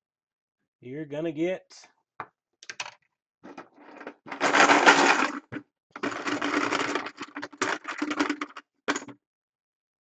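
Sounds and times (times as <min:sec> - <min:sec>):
plastic chips rattling in container: 0:03.9 - 0:09.1.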